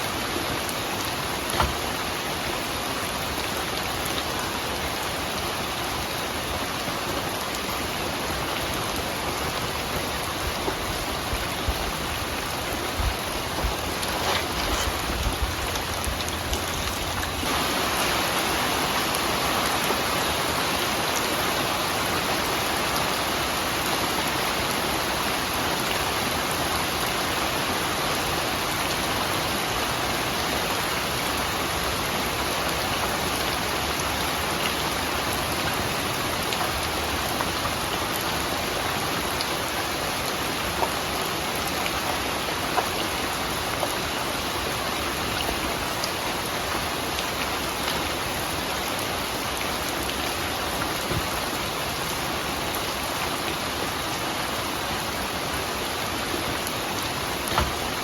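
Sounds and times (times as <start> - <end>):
heavy raindrops landing: 0.0 - 5.7, 7.2 - 21.4, 57.0 - 58.0
rain falling: 0.0 - 58.0.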